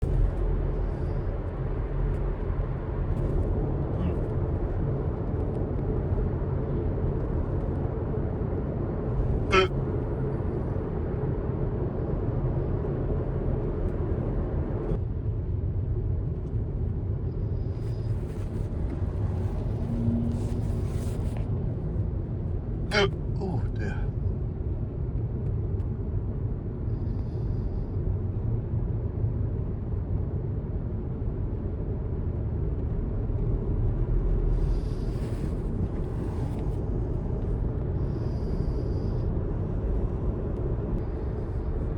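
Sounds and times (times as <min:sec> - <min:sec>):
car cabin road and engine noise: 0:00.0 - 0:41.9
man hiccuping: 0:09.4 - 0:09.7, 0:22.9 - 0:23.8.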